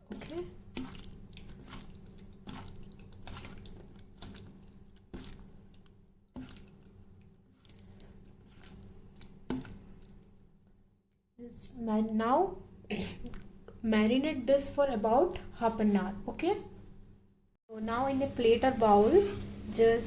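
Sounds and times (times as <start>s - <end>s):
wet squelching of meat mixing: 0.0s - 10.5s.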